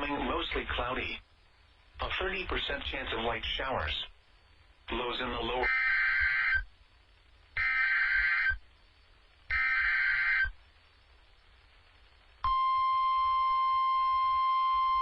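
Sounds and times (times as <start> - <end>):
digital header data bursts: 4.9 - 6.7, 7.6 - 8.7, 9.5 - 10.6
steady warning alarm tone: 5.6 - 6.7, 7.6 - 8.6, 9.5 - 10.6.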